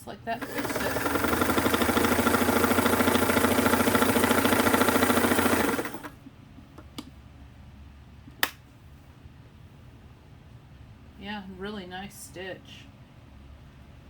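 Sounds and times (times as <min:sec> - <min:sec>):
sewing machine stitching: 0:00.4 - 0:06.2
sharp click: 0:08.3 - 0:08.6.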